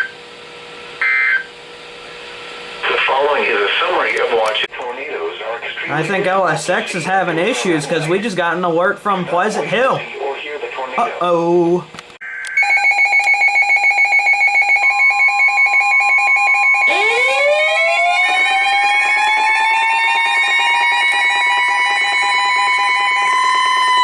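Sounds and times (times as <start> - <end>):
rising siren tone: 12.2 - 24.0
rapid electronic beeping: 18.1 - 24.0.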